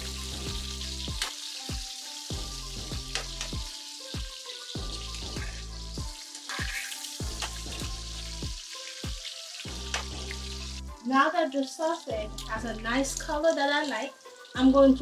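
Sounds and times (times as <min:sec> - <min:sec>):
background music: 0:00.0 - 0:15.0
sausage sizzling in oil: 0:00.0 - 0:15.0.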